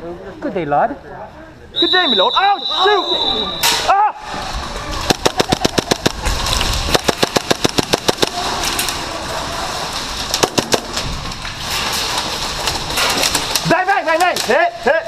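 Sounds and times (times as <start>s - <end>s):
airsoft gun shots: 5.1s - 6.2s, 6.9s - 8.4s.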